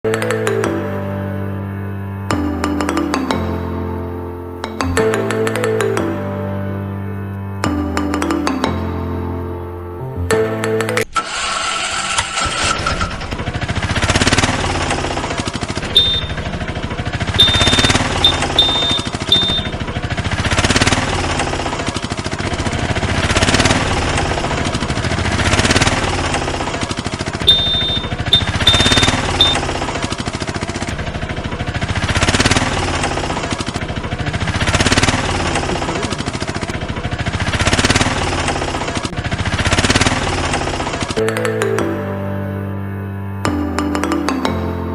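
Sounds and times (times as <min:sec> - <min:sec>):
engine chugging: 0:00.1 - 0:09.5, 0:10.1 - 0:44.9
fast mechanical rattle: 0:11.2 - 0:41.2
short high beeps: 0:16.0 - 0:16.4, 0:17.4 - 0:19.8, 0:27.5 - 0:29.6.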